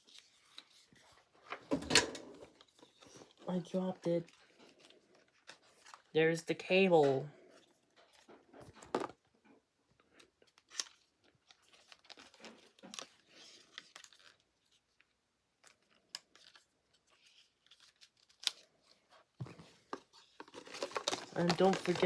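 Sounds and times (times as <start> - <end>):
packaging rustling and tearing: 2.4 - 6.1, 10.1 - 22.0.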